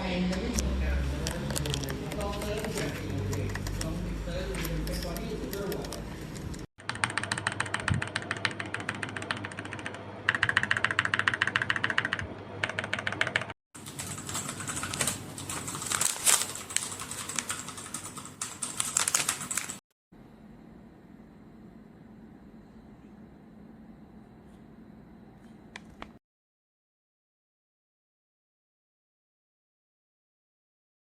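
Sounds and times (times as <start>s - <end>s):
clicking mechanical keyboard typing: 1.2s - 19.8s.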